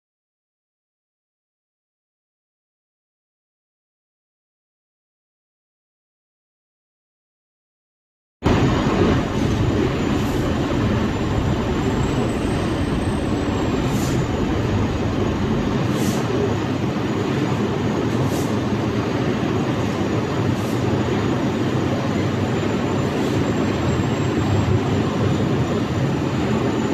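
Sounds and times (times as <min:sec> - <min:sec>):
faint high whine: 0:08.4 - 0:26.9
industrial equipment roaring: 0:08.4 - 0:26.9.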